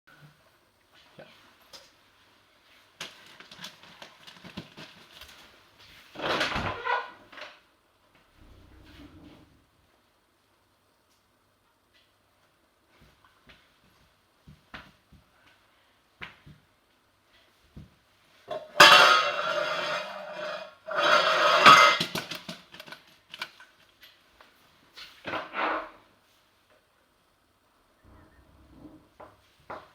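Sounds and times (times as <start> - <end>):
rustling creaking noise: 2.6 - 9.8, 28.0 - 29.9
metal clattering and rattling: 18.5 - 23.6.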